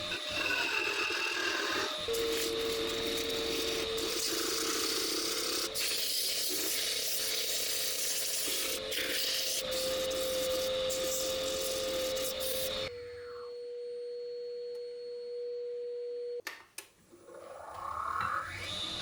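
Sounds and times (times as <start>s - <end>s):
tool hissing on spinning wood: 0.0s - 12.9s
wood lathe whine: 0.0s - 15.0s, 17.4s - 19.0s.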